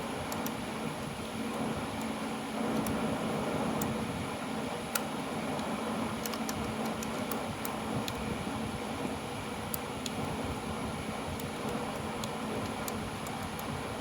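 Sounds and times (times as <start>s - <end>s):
electric fan running: 0.0s - 14.0s
light sharp clicks: 4.9s - 8.2s.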